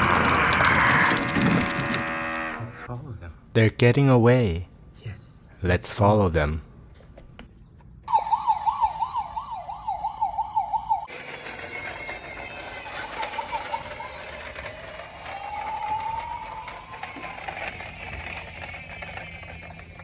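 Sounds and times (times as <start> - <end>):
siren wail: 8.1 - 19.2
fire engine siren warbling: 8.1 - 20.0.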